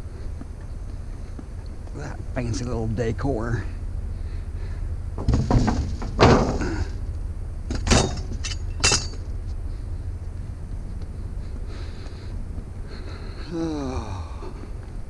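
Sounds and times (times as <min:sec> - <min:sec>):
steady low rumble: 0:00.0 - 0:15.0
objects knocking and clattering: 0:05.2 - 0:06.9, 0:07.7 - 0:09.2.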